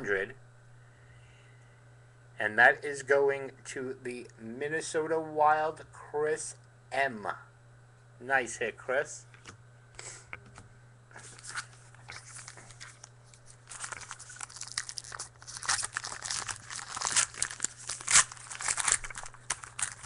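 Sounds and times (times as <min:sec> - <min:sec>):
low electrical hum: 0:00.0 - 0:20.0
wrapper tearing and crinkling: 0:11.3 - 0:20.0.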